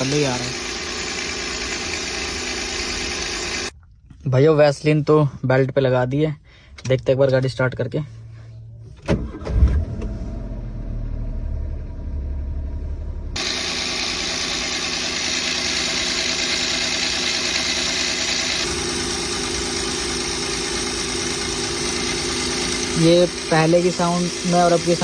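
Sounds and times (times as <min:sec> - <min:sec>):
car engine idling: 0:00.0 - 0:03.7, 0:10.1 - 0:25.0.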